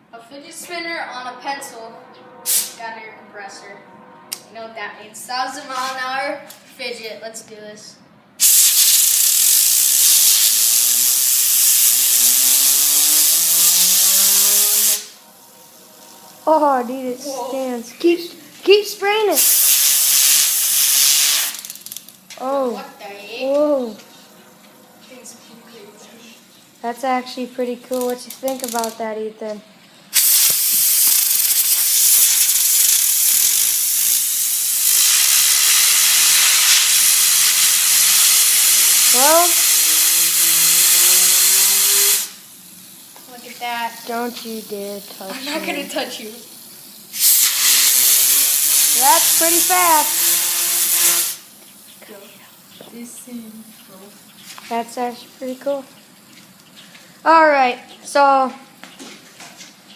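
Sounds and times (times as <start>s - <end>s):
compressed air hissing: 2.5s - 2.8s, 8.4s - 16.4s, 19.2s - 22.1s, 30.1s - 45.4s, 46.3s - 52.7s
fidget spinner whine rising: 9.1s - 29.0s.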